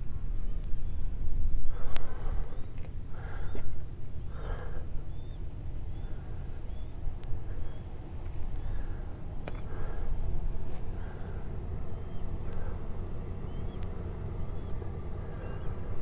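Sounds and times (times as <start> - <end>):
wind rumble on microphone: 0.0 - 16.0
person breathing heavily: 1.7 - 5.0, 8.6 - 11.7.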